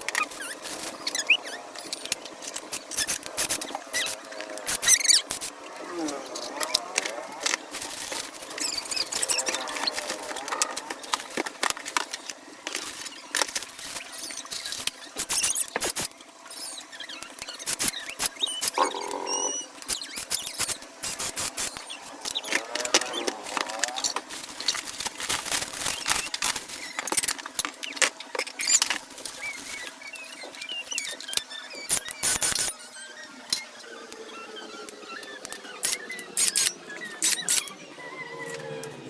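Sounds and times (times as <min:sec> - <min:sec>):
packaging rustling and clicking: 0:00.0 - 0:16.1, 0:17.2 - 0:32.7, 0:35.2 - 0:37.7.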